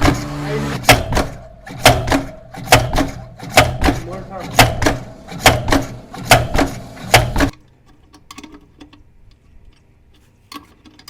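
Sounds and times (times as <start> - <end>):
shock absorber knocking: 0.8 - 4.0.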